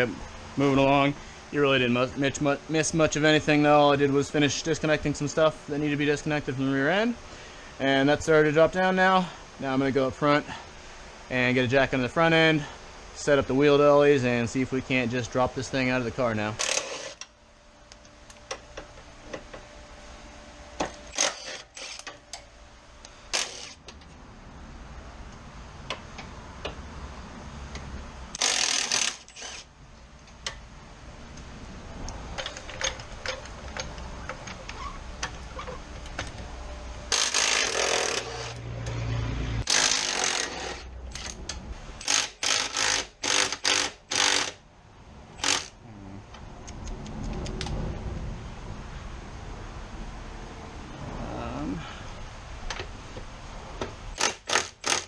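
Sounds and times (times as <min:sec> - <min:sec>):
tools clinking and knocking: 0:32.4 - 0:35.4.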